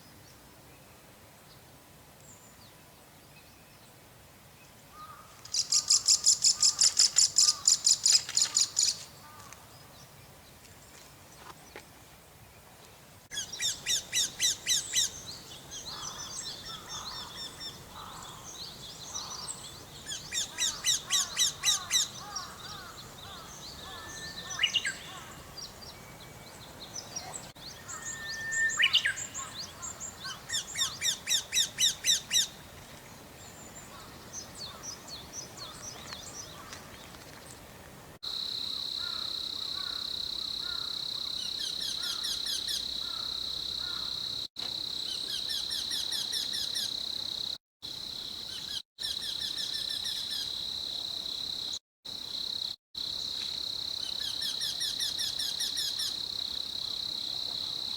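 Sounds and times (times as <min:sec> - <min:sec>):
bird song of repeated high notes: 0:13.3 - 0:32.5.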